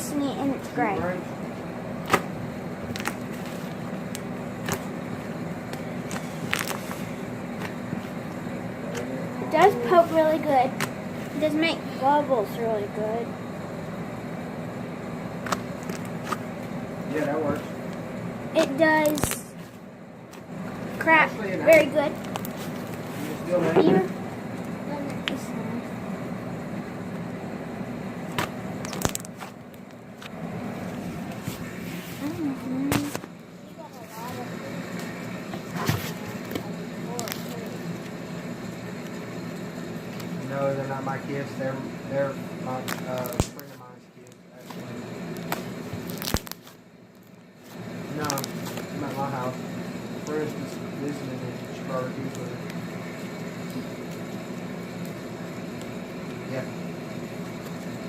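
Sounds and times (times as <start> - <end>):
steady low hum: 0.0 - 58.0
slime crackling and popping: 19.0 - 19.5, 28.3 - 29.9, 42.8 - 43.6, 45.3 - 47.4, 48.2 - 48.7.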